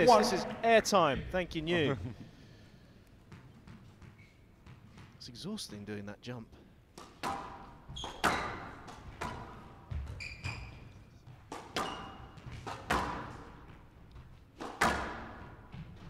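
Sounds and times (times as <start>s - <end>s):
shoe squeaks: 3.6s - 4.8s, 7.9s - 8.8s, 9.9s - 12.4s
squash ball hitting walls: 6.9s - 16.0s.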